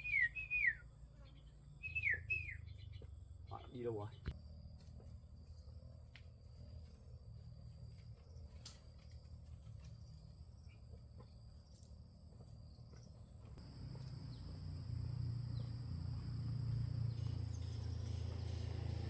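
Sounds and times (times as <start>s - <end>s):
insects trilling: 0.0s - 19.0s
low engine hum: 11.9s - 19.0s.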